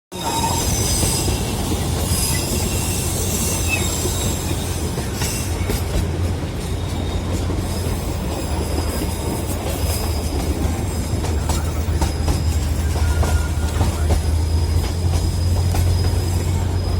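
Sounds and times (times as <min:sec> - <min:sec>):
high-pitched wheel squeals: 0:00.1 - 0:16.9
train rumbling on track: 0:00.1 - 0:16.9.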